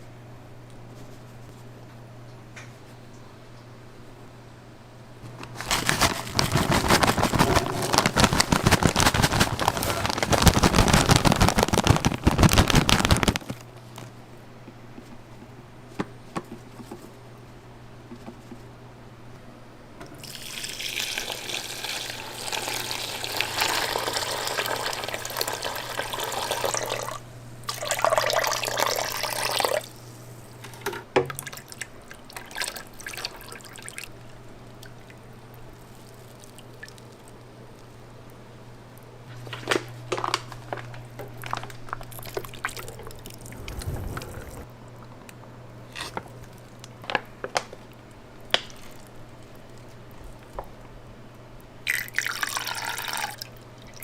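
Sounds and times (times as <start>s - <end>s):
liquid pouring: 20.2s - 26.9s, 51.9s - 53.5s
low hum: 43.2s - 45.6s.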